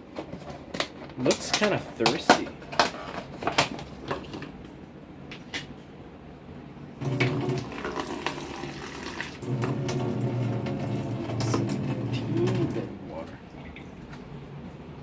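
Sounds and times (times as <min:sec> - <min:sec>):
water pouring into a container: 0:07.0 - 0:12.9.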